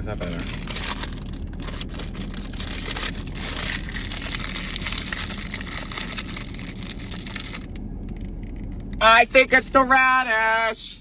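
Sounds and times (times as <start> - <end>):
foil wrapper crinkling: 0.1 - 8.9.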